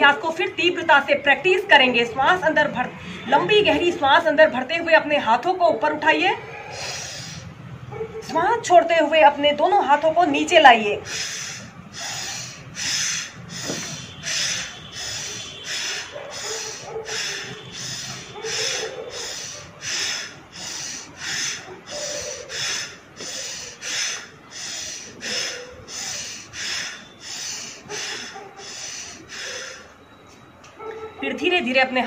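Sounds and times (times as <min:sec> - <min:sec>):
forceful breathing through nose: 0:06.6 - 0:07.6, 0:11.0 - 0:30.0.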